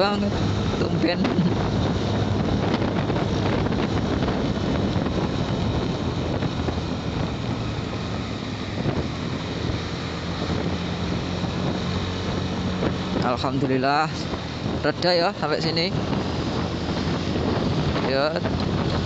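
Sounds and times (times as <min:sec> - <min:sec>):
motorcycle engine running: 0:00.0 - 0:19.0
wind noise on microphone: 0:00.0 - 0:19.0.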